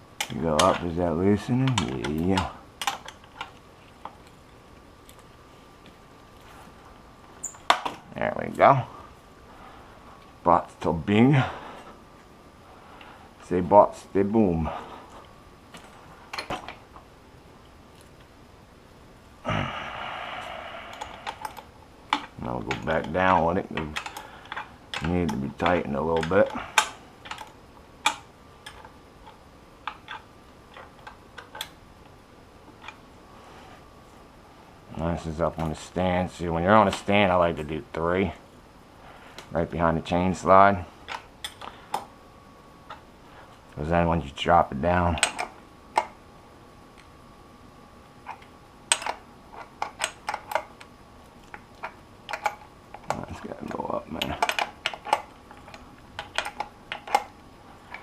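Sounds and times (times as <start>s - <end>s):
metallic clicks of hand tools: 54.2s - 57.3s.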